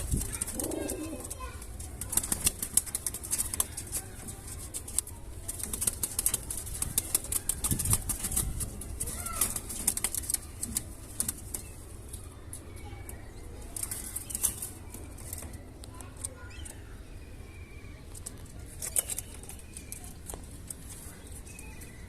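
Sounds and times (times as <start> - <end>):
pigeons flapping wings: 0.0 - 11.7.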